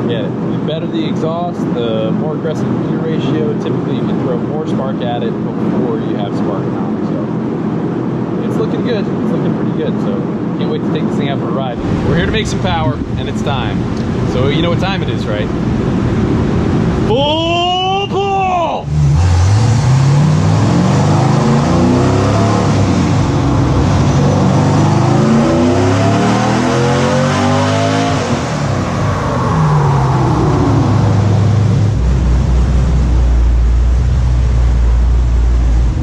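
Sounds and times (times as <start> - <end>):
vee eight engine revving: 11.6 - 17.7, 18.6 - 36.0.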